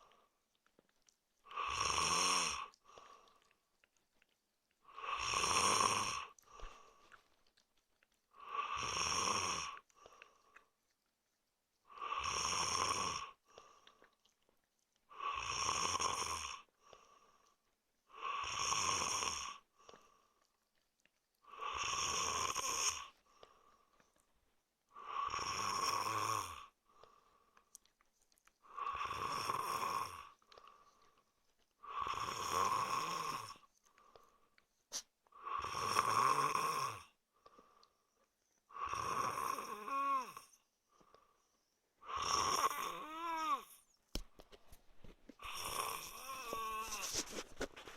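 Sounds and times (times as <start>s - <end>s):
man snoring: 1.5s - 2.7s, 5.0s - 6.3s, 8.4s - 9.8s, 12.0s - 13.4s, 15.2s - 16.7s, 18.2s - 19.6s, 21.5s - 23.1s, 25.0s - 26.7s, 28.7s - 30.4s, 31.8s - 33.6s, 35.4s - 37.1s, 38.7s - 40.6s, 42.0s - 43.8s, 45.4s - 47.3s.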